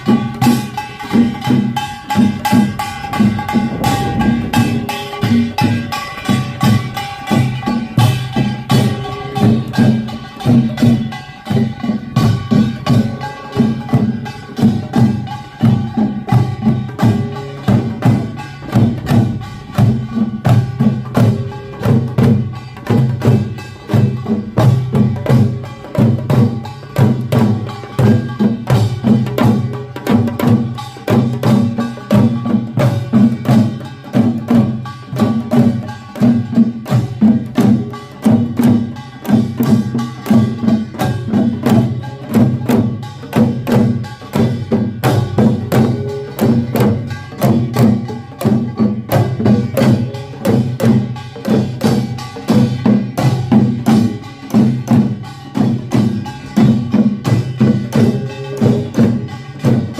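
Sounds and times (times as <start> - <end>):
drums beating: 0.0 - 59.9
metal gongs ringing: 0.0 - 59.9.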